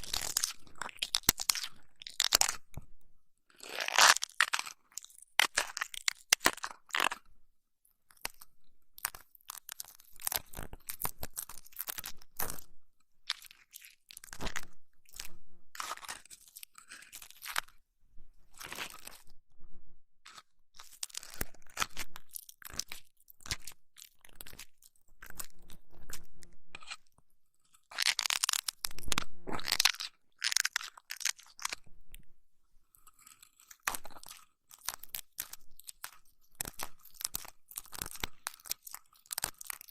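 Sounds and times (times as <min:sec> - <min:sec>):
crunchy crackling and rubbing: 0:27.8 - 0:31.8.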